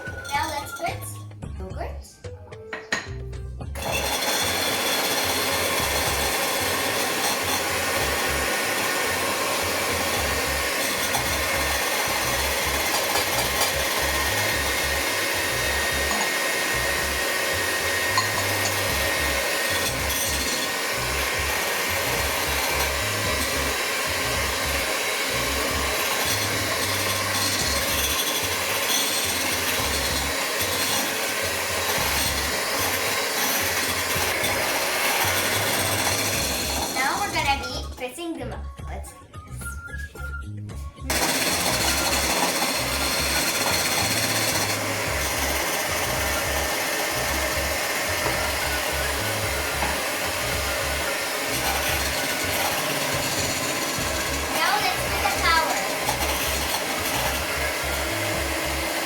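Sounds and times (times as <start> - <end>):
electric mixer beating batter: 3.7 - 37.8, 41.1 - 59.0.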